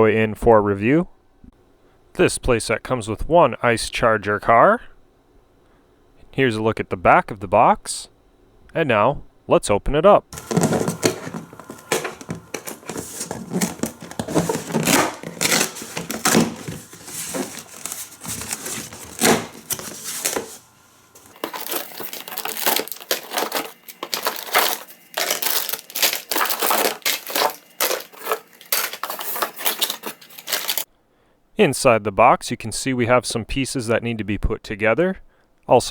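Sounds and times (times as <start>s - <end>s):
packaging crinkling and tearing: 10.4s - 30.9s.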